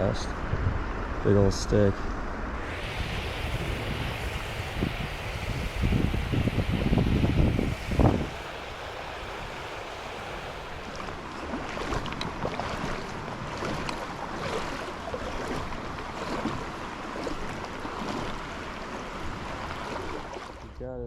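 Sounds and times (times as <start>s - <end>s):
creek water rushing: 2.4s - 20.7s
faint ticks and light splashes: 10.6s - 20.7s.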